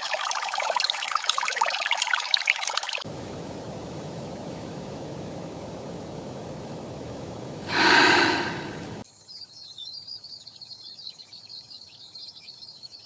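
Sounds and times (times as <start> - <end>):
insects chirping: 3.0 - 9.0
running water: 3.0 - 9.0
loud breathy whoosh: 6.7 - 9.0.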